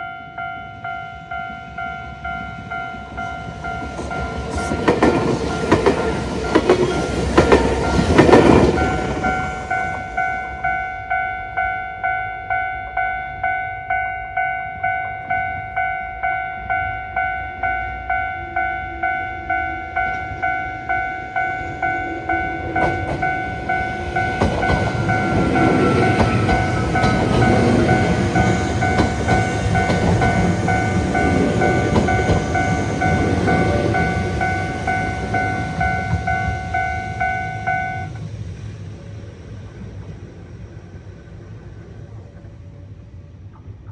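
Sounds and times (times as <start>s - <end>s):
crossing warning bell ringing: 0.0s - 38.3s
train wheels clacking over rail joints: 3.9s - 10.0s, 22.7s - 36.6s.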